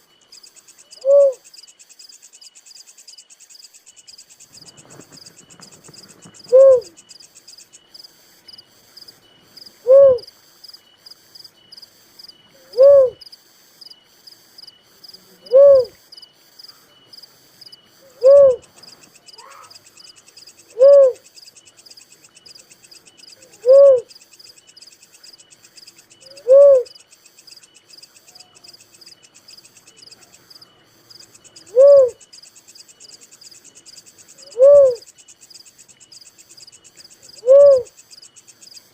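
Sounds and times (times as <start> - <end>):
insects chirping: 0.0 - 38.9
dove hooting: 0.8 - 1.5, 4.5 - 7.1, 9.7 - 10.3, 12.5 - 13.2, 15.3 - 16.0, 18.0 - 20.0, 20.6 - 21.3, 23.4 - 24.1, 26.1 - 27.1, 31.4 - 32.3, 34.3 - 35.1, 37.3 - 38.0.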